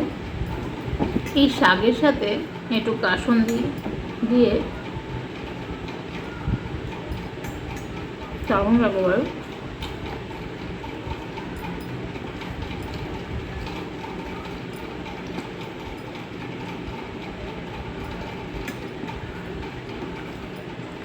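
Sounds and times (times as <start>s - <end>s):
low rumbling background noise: 0.0s - 21.0s.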